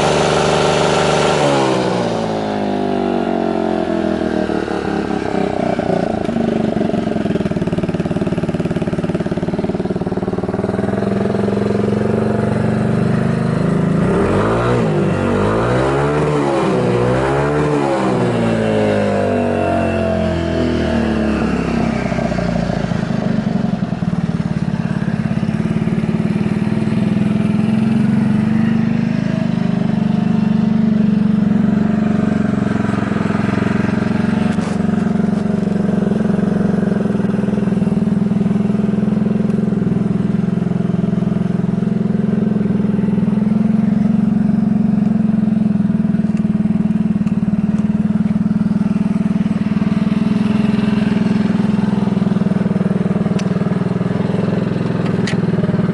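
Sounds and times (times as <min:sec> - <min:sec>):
scooter engine idling: 0:00.0 - 0:55.9.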